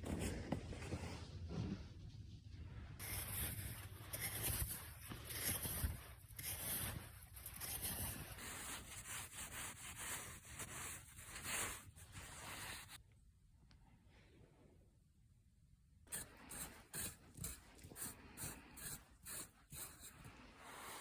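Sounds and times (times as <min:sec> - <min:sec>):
snow crunching and scraping: 0:00.0 - 0:01.8, 0:03.0 - 0:13.0.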